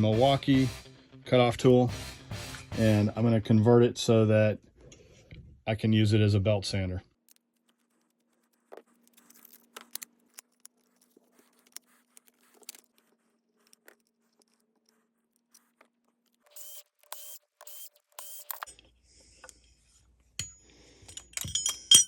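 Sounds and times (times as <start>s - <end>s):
small parts clicking and scraping: 7.2s - 22.0s.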